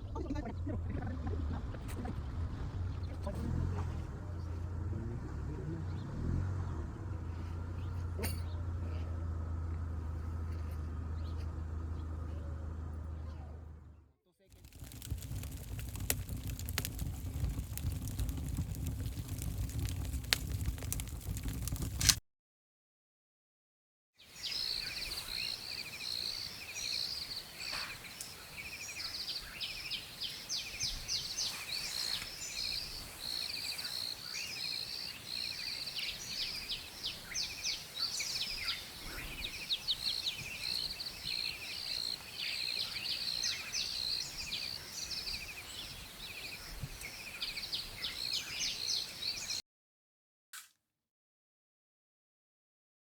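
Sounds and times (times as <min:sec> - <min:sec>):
small birds chirping and trilling: 0:04.0 - 0:09.2, 0:10.0 - 0:12.5, 0:14.6 - 0:21.8, 0:24.2 - 0:49.6.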